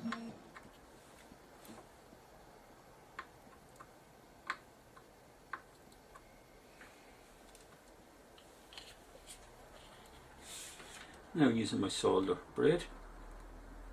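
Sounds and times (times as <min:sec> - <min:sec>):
faint soldering iron ticks: 0:03.1 - 0:06.3.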